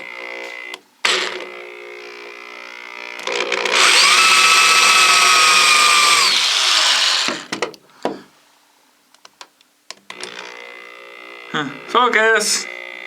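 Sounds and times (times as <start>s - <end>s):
electric drill whining: 3.1s - 7.5s, 10.1s - 11.9s.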